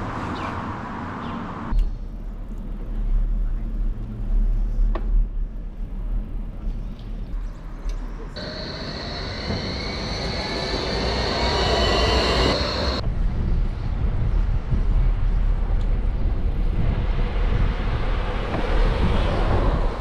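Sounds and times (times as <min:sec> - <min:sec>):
high whine with gliding tones: 0:08.4 - 0:13.0
rushing noise: 0:08.4 - 0:13.2
low rumble: 0:08.4 - 0:20.0
wind rushing over microphone: 0:08.4 - 0:20.0.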